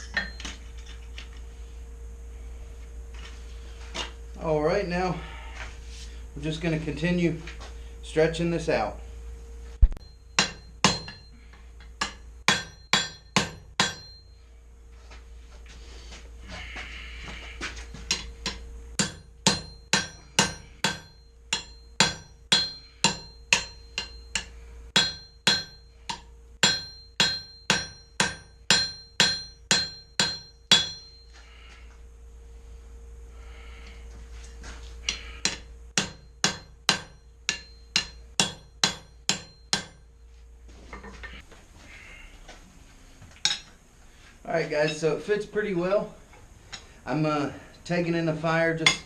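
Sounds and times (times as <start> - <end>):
hammer ringing on anvil: 0.0 - 0.6, 10.0 - 14.4, 18.0 - 31.4, 35.1 - 40.1, 48.8 - 49.0.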